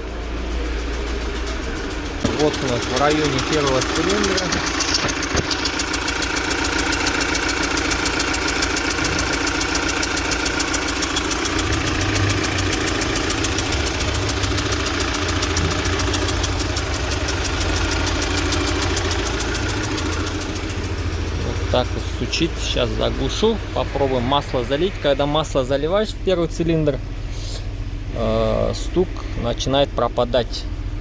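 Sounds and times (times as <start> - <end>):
petrol engine idling: 0.0 - 31.0
fast even knocking tick: 2.2 - 25.0.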